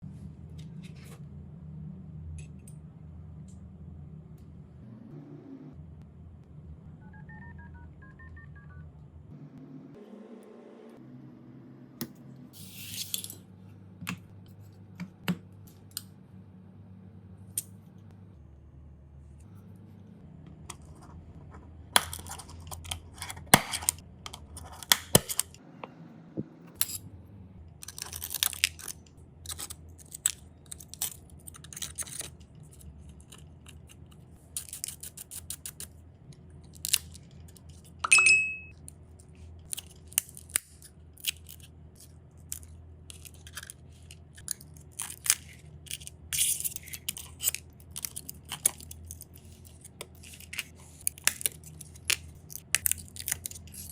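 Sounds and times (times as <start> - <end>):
short ringing ping: 38.1 - 38.7.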